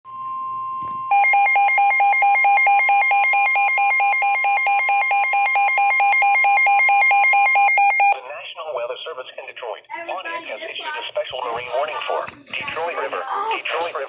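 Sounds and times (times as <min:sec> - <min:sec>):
steady electronic beep: 0:00.1 - 0:08.2
warbling alarm tone: 0:00.1 - 0:08.2.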